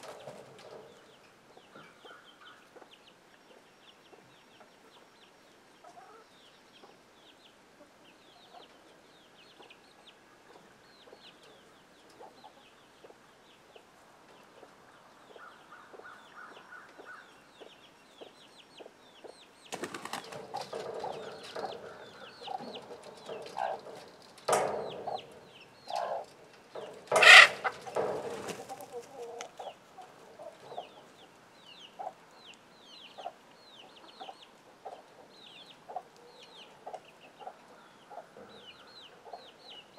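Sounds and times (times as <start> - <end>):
chicks peeping: 0.0 - 39.9
hen clucking: 20.3 - 32.2.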